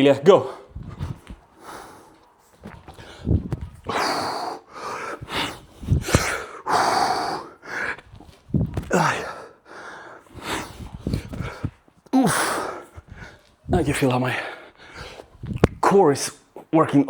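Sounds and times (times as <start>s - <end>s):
man breathing hard: 0.4s - 13.7s, 14.3s - 15.6s
low thuds: 0.8s - 1.5s, 2.6s - 4.0s, 5.2s - 6.5s, 8.2s - 9.2s, 15.4s - 15.8s.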